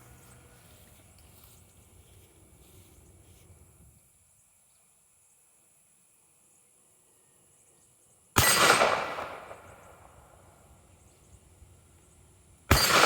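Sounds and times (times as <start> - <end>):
pistol shot: 8.4 - 10.2, 12.7 - 13.0.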